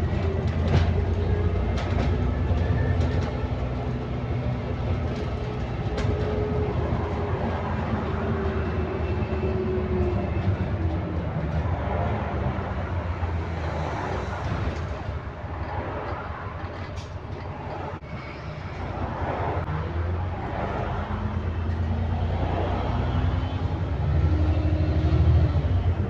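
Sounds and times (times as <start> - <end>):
bus engine and driveline running: 0.0 - 26.0
low groan under acceleration: 0.0 - 26.0
road noise: 0.0 - 26.0.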